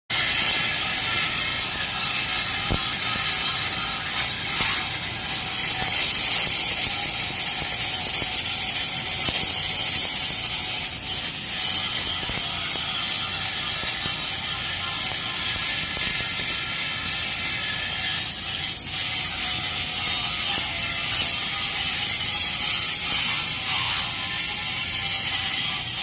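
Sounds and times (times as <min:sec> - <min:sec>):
welding arc crackling and sizzling: 0:00.1 - 0:26.0.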